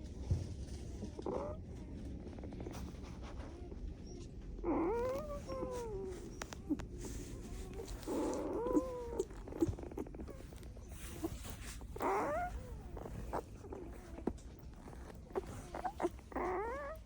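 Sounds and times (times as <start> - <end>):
puppy snuffles: 2.6 - 17.0
puppy squeaking and whimpering: 3.5 - 17.0.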